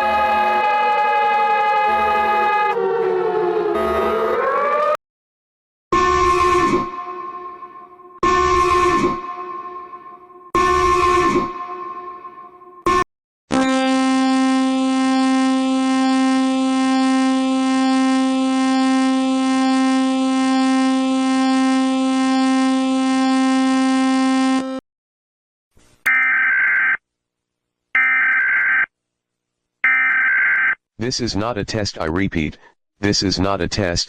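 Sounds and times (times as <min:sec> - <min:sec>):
low buzzing alarm tone: 0:00.0 - 0:04.9, 0:06.0 - 0:24.8.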